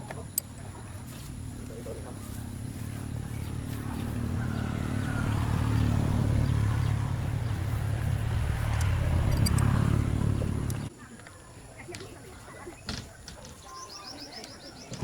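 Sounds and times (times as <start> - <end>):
engine rumbling: 0.0 - 10.9.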